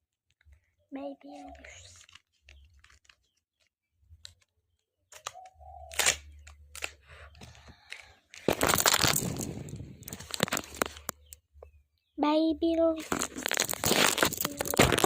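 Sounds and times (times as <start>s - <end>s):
packaging tearing and crinkling: 5.1s - 7.0s, 8.4s - 11.1s, 13.0s - 15.0s.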